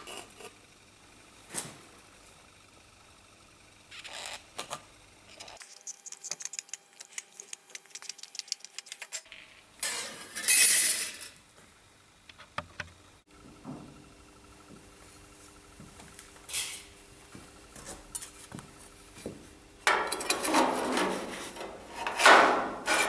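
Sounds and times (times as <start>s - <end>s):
loud scrape across steel: 20.0s - 23.0s.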